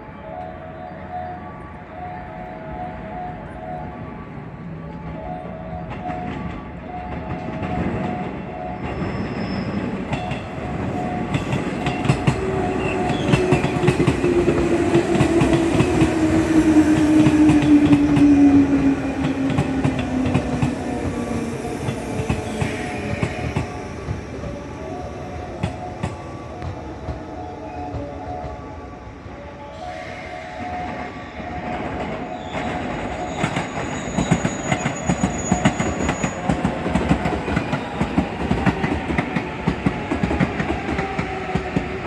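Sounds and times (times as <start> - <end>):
train wheels clattering on rails: 5.9 - 24.6, 30.6 - 42.0.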